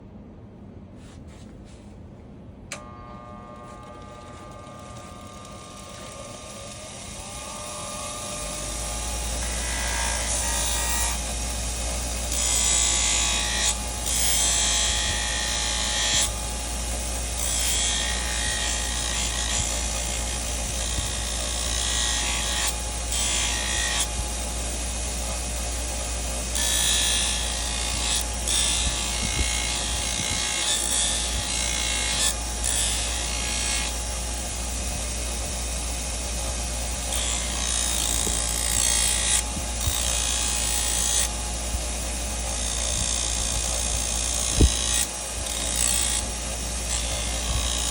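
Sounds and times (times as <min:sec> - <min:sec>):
electric grinder motor humming: 0:02.7 - 0:47.9
blade rasping on grinder: 0:02.8 - 0:47.9.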